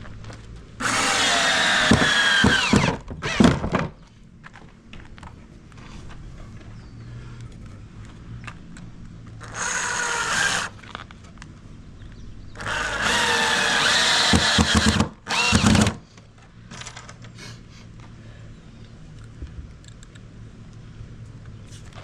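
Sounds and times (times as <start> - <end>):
power drill whining: 0.8 - 3.6, 9.4 - 10.8, 12.6 - 16.0.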